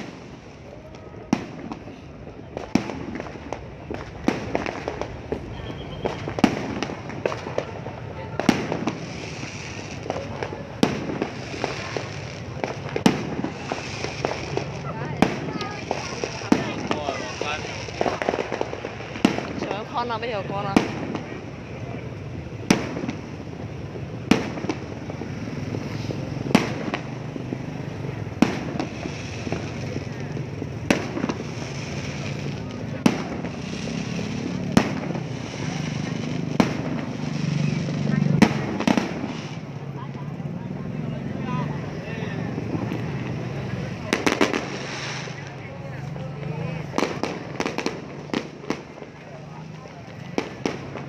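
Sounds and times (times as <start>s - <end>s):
fireworks bangs and crackles: 0.0s - 51.0s.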